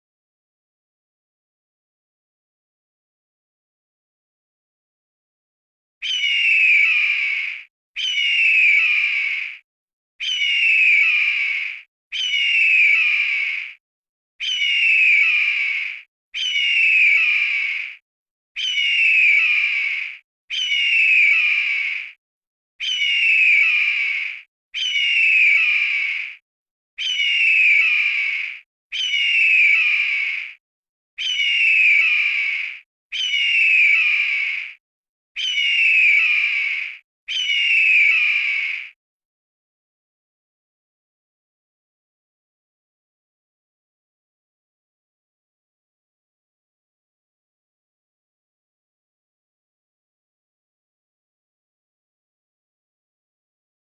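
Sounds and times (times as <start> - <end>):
eagle screech: 35.4 - 39.0.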